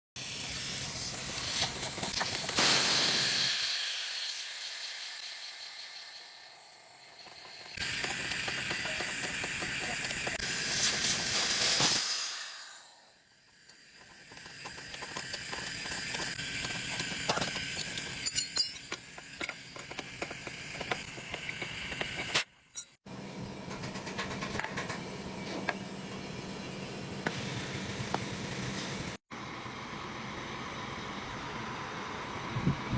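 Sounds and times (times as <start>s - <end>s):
hiss: 0.2s - 18.3s.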